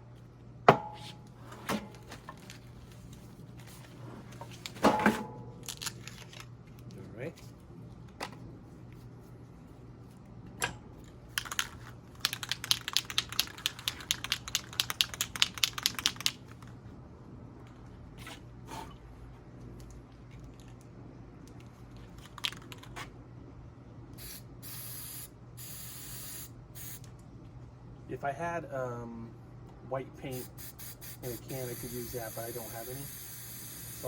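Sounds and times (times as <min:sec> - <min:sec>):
spray paint hissing: 0:24.2 - 0:27.0, 0:30.3 - 0:34.0.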